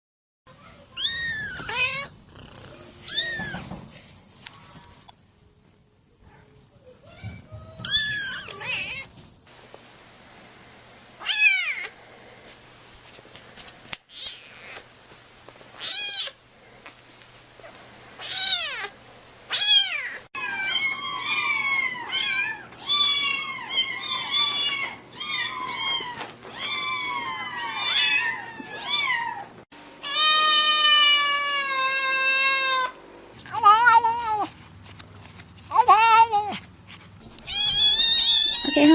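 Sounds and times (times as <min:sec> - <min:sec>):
kittens meowing: 0:01.0 - 0:03.7, 0:07.6 - 0:09.2, 0:19.5 - 0:32.9, 0:37.4 - 0:38.9.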